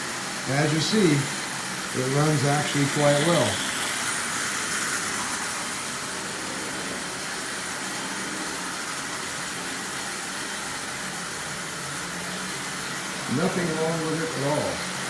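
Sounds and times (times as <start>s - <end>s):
toy train motor whirring: 0.0s - 15.0s.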